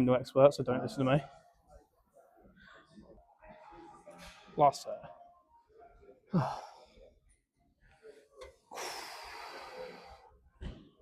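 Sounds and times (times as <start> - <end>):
man breathing out hard: 8.7 - 10.3.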